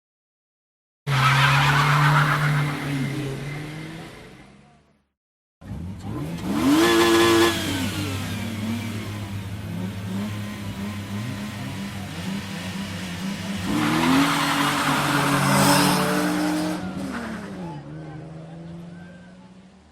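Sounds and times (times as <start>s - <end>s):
car engine revving: 5.6s - 19.8s.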